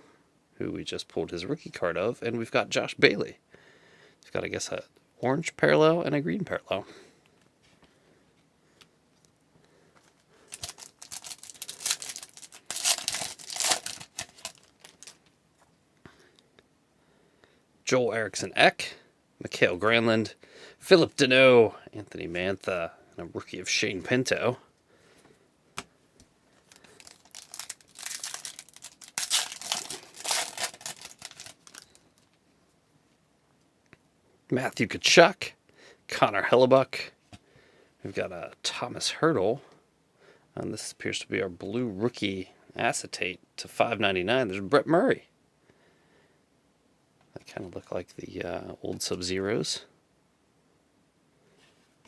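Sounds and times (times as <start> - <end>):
wrapper tearing and crinkling: 10.5 - 15.2, 26.7 - 32.2.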